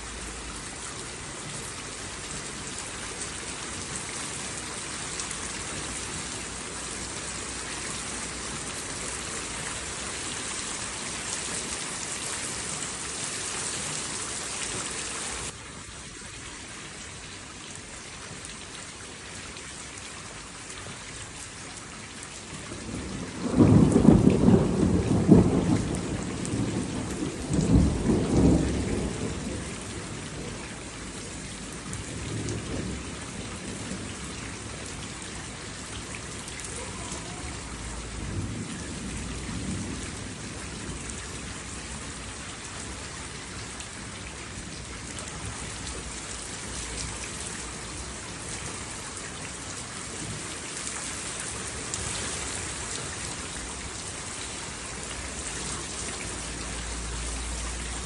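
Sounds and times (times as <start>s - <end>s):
heavy rain: 0.0s - 58.0s
low rumble of thunder: 22.6s - 48.8s.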